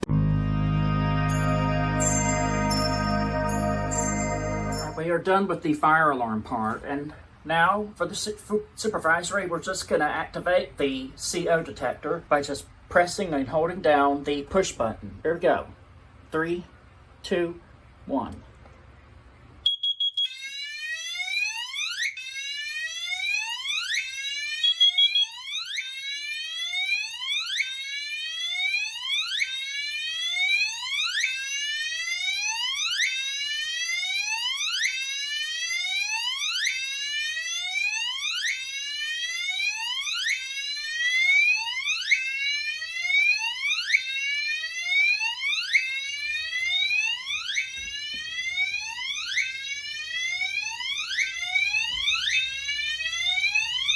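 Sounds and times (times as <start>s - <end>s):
sweeping whoop alarm tone: 0.0s - 5.1s.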